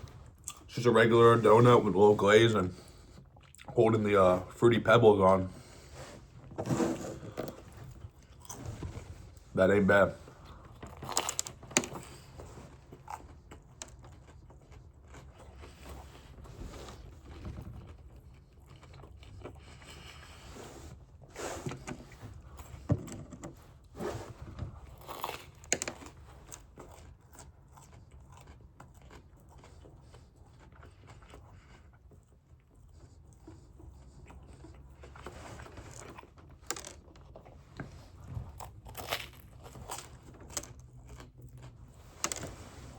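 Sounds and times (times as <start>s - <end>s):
person biting and chewing donut: 24.8s - 35.3s.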